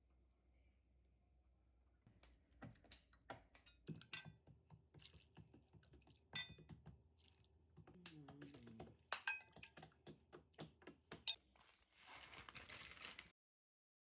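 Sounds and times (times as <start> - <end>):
kitchenware clicking and clinking: 2.7 - 5.4, 6.2 - 6.9, 8.0 - 11.4.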